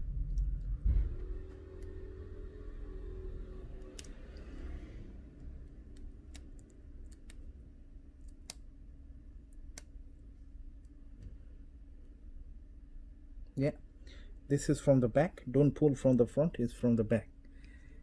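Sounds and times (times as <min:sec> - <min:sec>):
low steady hum: 0:00.0 - 0:18.0
small tools clicking on phone: 0:05.8 - 0:07.6.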